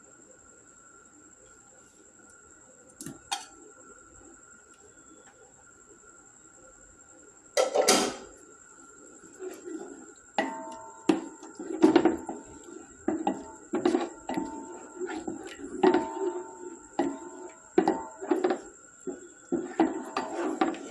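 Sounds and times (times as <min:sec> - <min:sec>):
metal spoon scraping a pot: 0:09.4 - 0:20.9.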